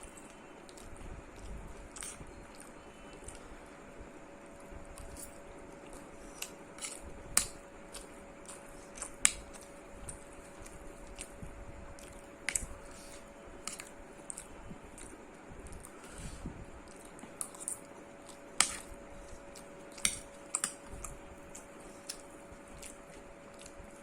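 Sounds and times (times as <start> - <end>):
faint steady hum: 0.0 - 24.0
mouth eating clicks and smacks: 0.2 - 3.5, 4.9 - 16.1, 16.8 - 24.0.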